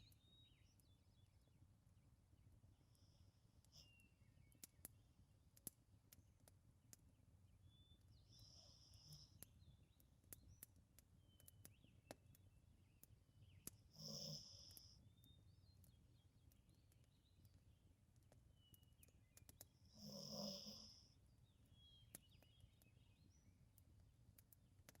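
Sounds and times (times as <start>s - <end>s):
dog snoring: 14.0s - 14.8s, 20.0s - 21.0s.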